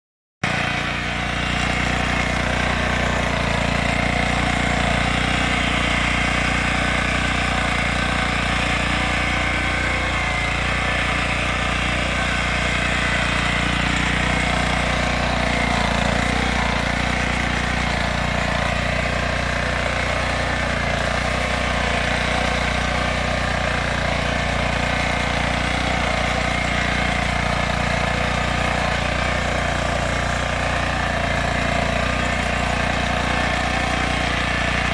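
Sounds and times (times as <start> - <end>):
digging machine engine running: 0.4 - 34.9.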